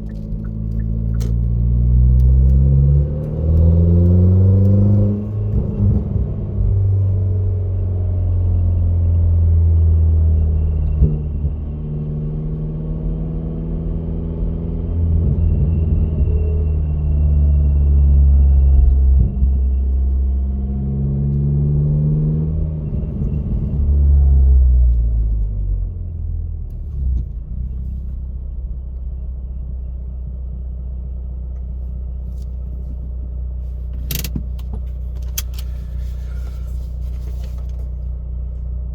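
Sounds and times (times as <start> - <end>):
car engine revving and idling: 0.0 - 38.9
sharp click: 34.0 - 35.7.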